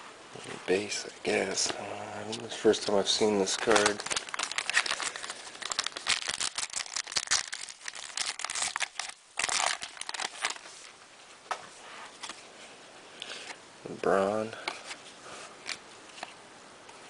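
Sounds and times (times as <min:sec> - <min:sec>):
cards rustling: 0:01.3 - 0:10.9, 0:14.6 - 0:16.4
wrapper crinkling: 0:02.5 - 0:10.9.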